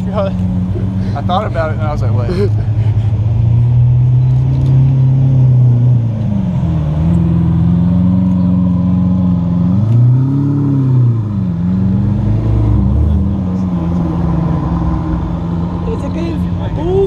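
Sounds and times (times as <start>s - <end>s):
car engine running: 0.0s - 17.0s.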